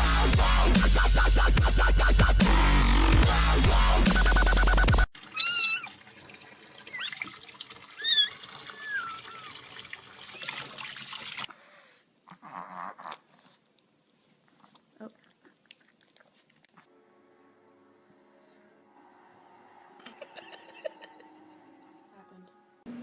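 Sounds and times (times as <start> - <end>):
cat meowing: 5.3 - 5.9, 8.0 - 9.6.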